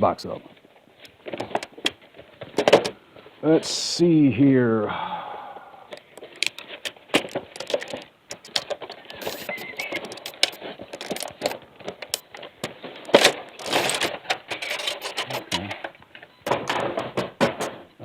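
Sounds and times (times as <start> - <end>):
plastic packaging crinkling: 6.2 - 11.6, 12.2 - 15.5.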